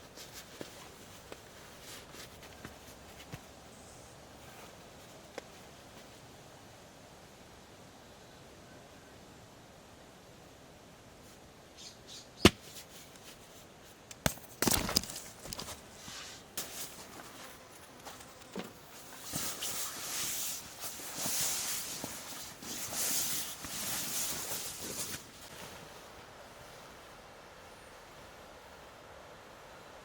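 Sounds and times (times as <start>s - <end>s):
rustling: 0.0s - 6.2s, 12.4s - 26.2s.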